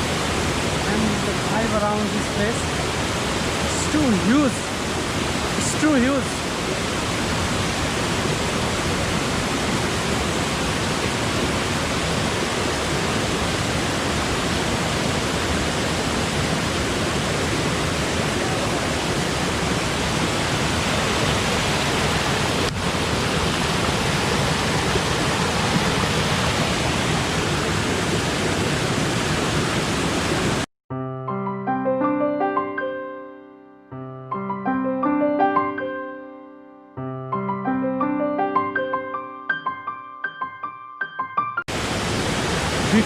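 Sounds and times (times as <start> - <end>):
waterfall rushing: 0.0 - 30.7, 41.7 - 43.0.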